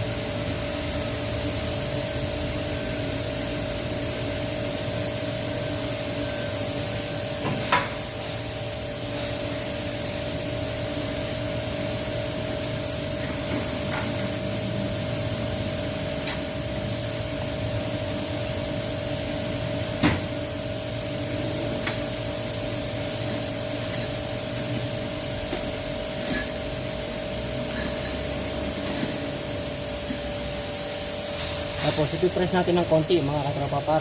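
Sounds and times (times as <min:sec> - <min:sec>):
constant hum: 0:21.1 - 0:34.0
steady hiss: 0:30.4 - 0:34.0.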